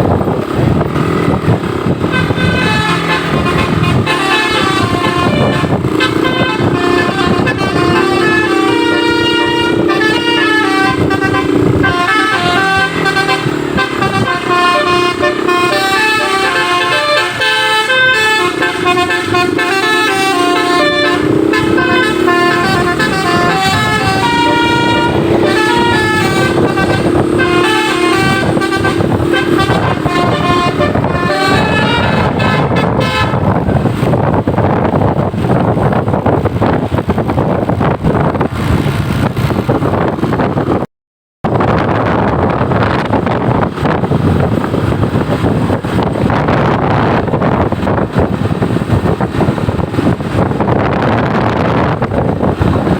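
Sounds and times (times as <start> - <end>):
musical bus horn melody: 1.8 - 34.2.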